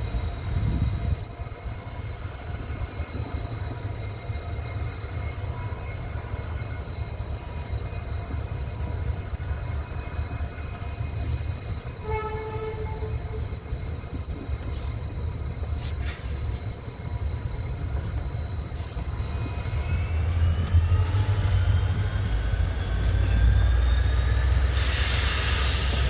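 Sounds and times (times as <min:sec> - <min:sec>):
train low rumble: 0:00.0 - 0:26.0
locomotive horn blast: 0:12.0 - 0:13.4.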